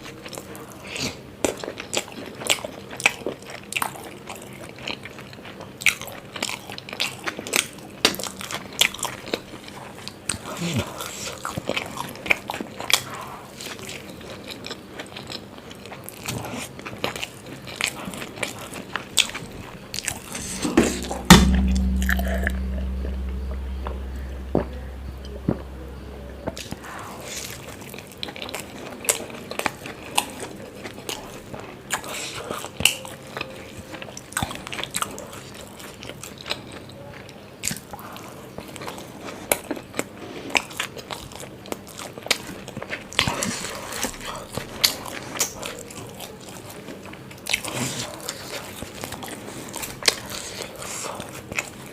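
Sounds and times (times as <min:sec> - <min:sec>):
chewing and crunching food: 0:00.0 - 0:20.7, 0:26.6 - 0:51.9
low hum: 0:20.4 - 0:27.1
loud thump: 0:20.6 - 0:26.6.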